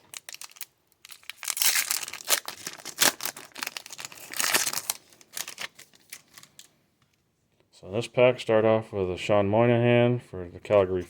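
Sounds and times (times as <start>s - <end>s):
plastic wrapper crinkling and tearing: 0.0s - 6.7s.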